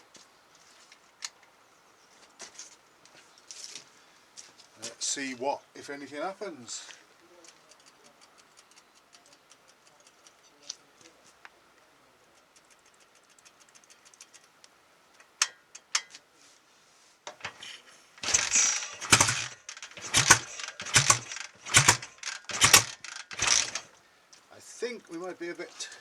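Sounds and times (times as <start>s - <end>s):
motorcycle engine running unevenly: 17.4s - 23.9s.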